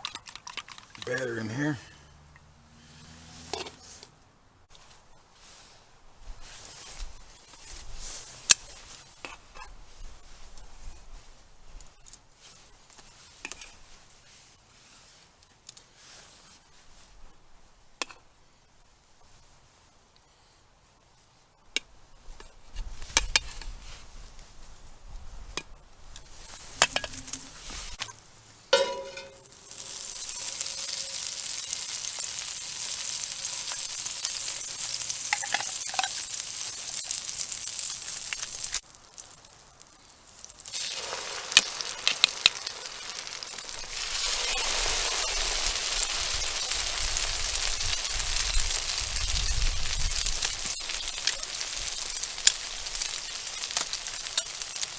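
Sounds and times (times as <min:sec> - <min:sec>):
ringing metal clank: 0:28.8 - 0:29.7
utensil clinking against pan: 0:28.8 - 0:29.8
food sizzling in a skillet: 0:28.8 - 0:54.9.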